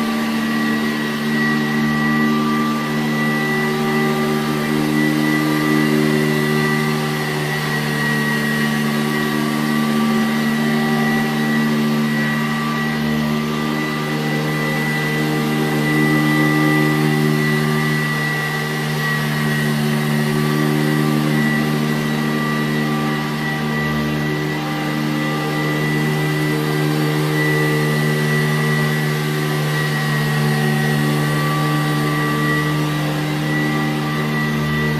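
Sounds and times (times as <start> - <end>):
upright vacuum cleaner running: 0.0 - 34.9.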